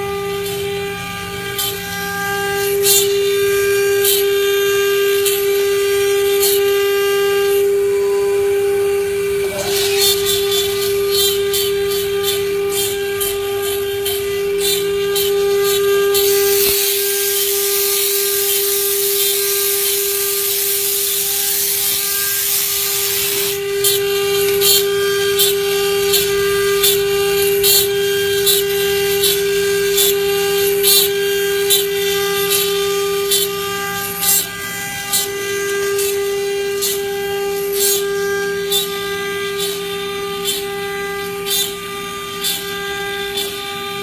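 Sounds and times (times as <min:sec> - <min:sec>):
cutting hiss: 0:08.9 - 0:44.0.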